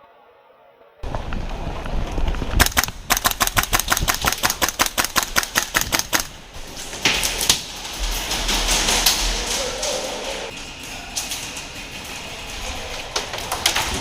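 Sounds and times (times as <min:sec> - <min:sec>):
airsoft guns firing rapidly: 0:02.6 - 0:06.4.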